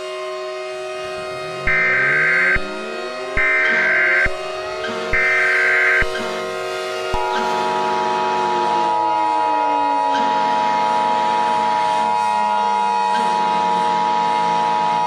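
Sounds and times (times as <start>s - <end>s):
low tone falling in pitch: 1.0s - 5.2s
layered electronic alert tones: 1.2s - 6.5s.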